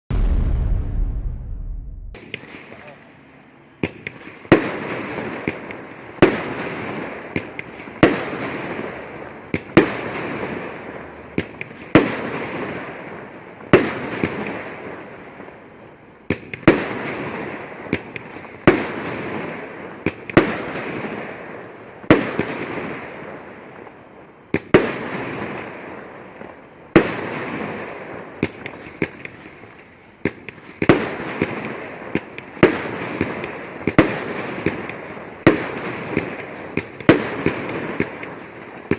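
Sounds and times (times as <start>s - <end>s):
firework effects bursting: 0.1s - 2.7s, 30.3s - 38.9s
firework shots reporting: 0.1s - 3.0s, 16.4s - 38.9s
small firework pops: 3.8s - 8.6s, 9.5s - 10.5s, 11.3s - 12.8s, 16.3s - 21.3s, 24.5s - 38.9s.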